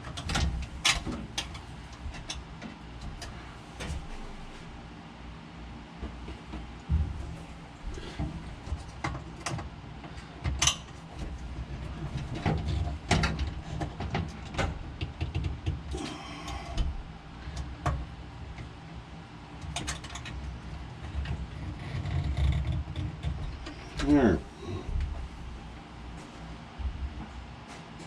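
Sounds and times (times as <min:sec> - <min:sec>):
low handling rumble: 0:20.3 - 0:28.0.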